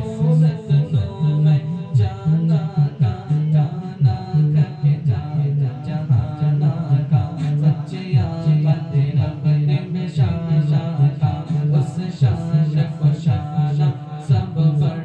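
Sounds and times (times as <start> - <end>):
repeating low beat: 0.0 - 15.0
solo voice singing: 0.0 - 15.0.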